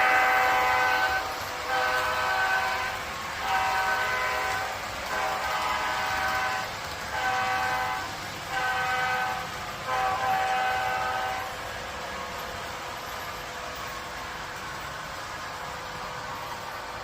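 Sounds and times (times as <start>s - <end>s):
train horn blasts: 0.0s - 12.3s.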